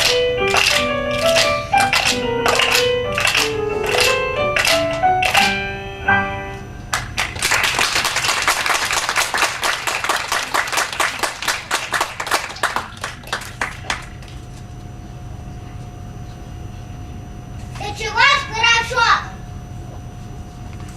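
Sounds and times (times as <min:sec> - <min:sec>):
audience applauding: 0:00.0 - 0:05.6, 0:06.9 - 0:14.4
piano notes: 0:00.0 - 0:07.4
faint steady hum: 0:00.0 - 0:20.9.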